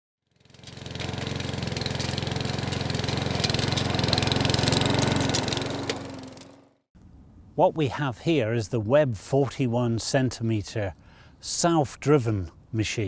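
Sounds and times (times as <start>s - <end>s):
lawn mower engine running: 0.2s - 6.8s.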